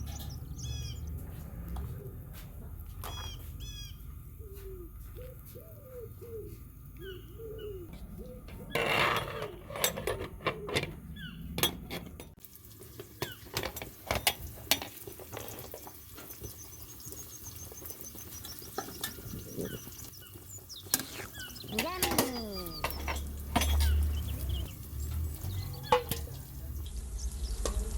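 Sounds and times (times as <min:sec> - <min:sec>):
utensil scraping a cooking pot: 0:07.8 - 0:16.6, 0:17.6 - 0:26.9
metal utensils clinking: 0:08.4 - 0:16.3, 0:20.9 - 0:26.8.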